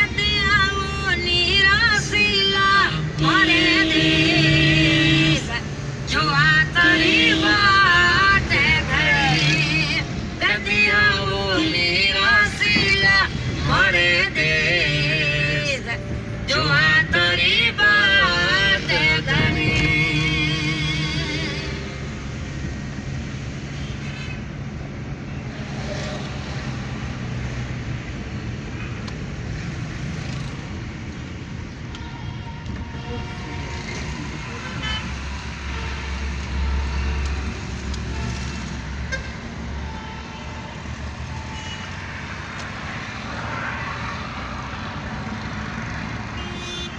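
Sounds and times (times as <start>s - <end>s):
vehicle engines: 0.0s - 46.9s
car horn toots: 3.2s - 5.6s, 6.7s - 10.0s, 11.4s - 12.2s, 46.4s - 46.9s.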